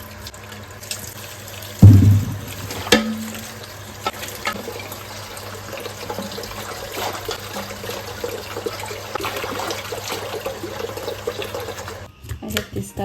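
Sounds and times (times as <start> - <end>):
small crackling splashes: 0.0 - 12.1
tap water splashing into sink: 0.0 - 12.7.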